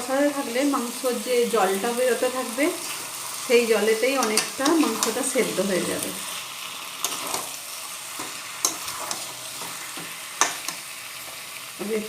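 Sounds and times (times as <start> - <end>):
meat sizzling in oil in a pan: 0.0 - 12.0
spatula scraping a pan: 6.8 - 11.5.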